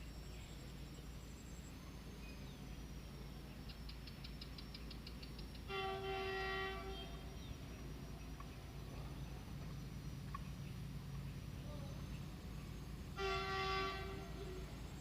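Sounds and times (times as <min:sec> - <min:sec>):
locomotive horn blast: 0:05.7 - 0:07.4, 0:13.1 - 0:14.8.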